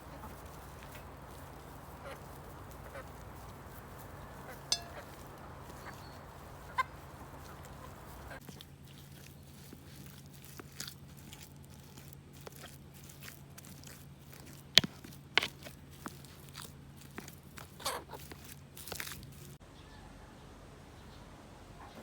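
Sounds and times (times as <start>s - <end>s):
low steady hum: 0.0s - 8.4s
clicks and crunching handling: 0.0s - 19.6s.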